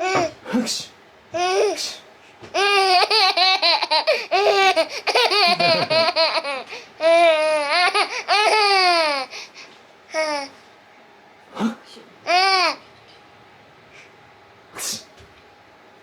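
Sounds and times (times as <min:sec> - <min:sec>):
baby laughing: 0:02.6 - 0:09.3.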